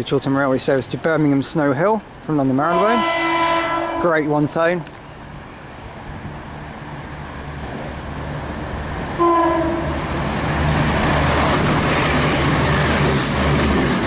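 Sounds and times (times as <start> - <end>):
train horn blast: 2.7 - 4.3, 9.2 - 10.0
train rumbling past on rails: 2.9 - 14.0.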